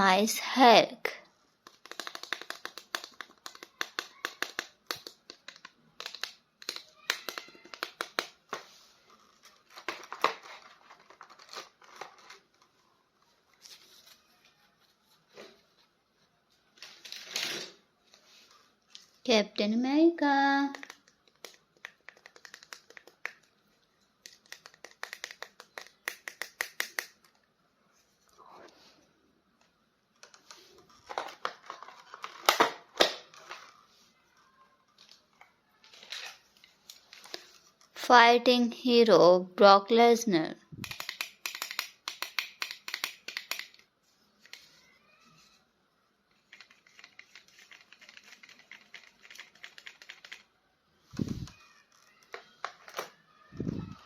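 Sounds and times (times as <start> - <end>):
plastic toy figure clicking: 24.3 - 27.3, 40.8 - 43.8.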